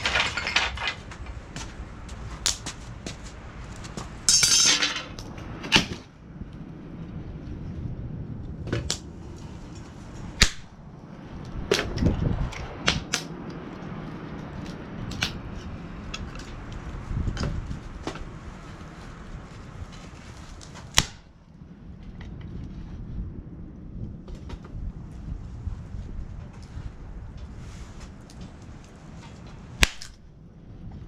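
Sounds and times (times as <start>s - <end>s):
metal clacks and knocks: 0.0s - 1.4s.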